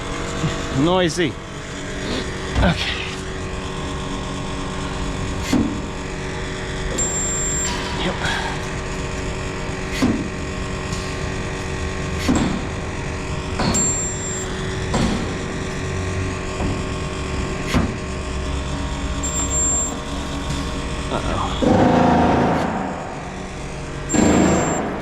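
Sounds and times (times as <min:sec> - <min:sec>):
spot welder machine hum: 0:00.0 - 0:25.0
short high beep: 0:07.0 - 0:07.8, 0:13.8 - 0:14.5, 0:19.2 - 0:20.3, 0:21.5 - 0:25.0.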